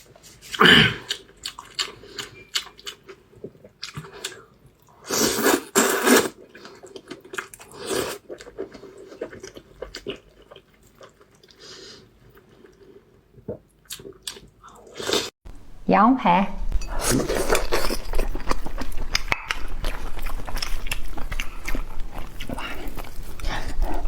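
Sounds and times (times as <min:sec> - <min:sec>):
chewing and wet mouth sounds: 0:00.2 - 0:15.3, 0:16.7 - 0:24.0.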